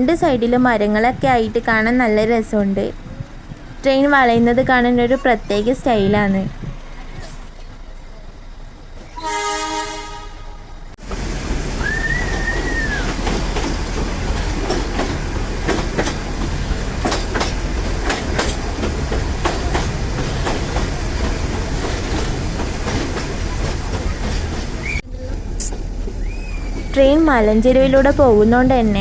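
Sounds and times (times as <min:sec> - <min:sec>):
train coaches rumbling: 0:00.0 - 0:29.0
train horn: 0:09.2 - 0:10.9
wheels clattering over rail joints: 0:11.1 - 0:29.0
wheels squealing on a curve: 0:11.7 - 0:14.1.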